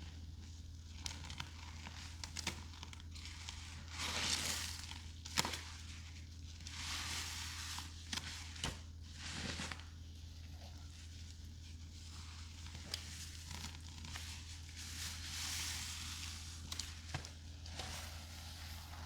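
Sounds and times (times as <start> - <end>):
small clicks and crackles: 0.4 - 5.8, 11.7 - 14.6
soapy sponges squelching: 1.0 - 19.0.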